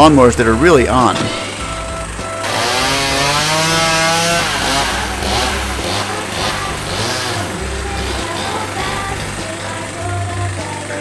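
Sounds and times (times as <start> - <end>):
small petrol engine revving: 2.4 - 11.0.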